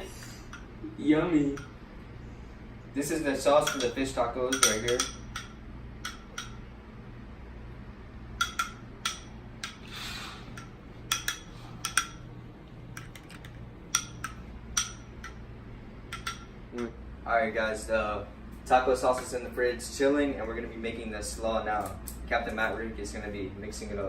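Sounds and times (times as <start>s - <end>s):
low steady hum: 0.0s - 24.0s
dishes and utensils clinking: 3.6s - 6.6s, 10.5s - 12.3s, 12.9s - 15.4s, 16.1s - 16.9s.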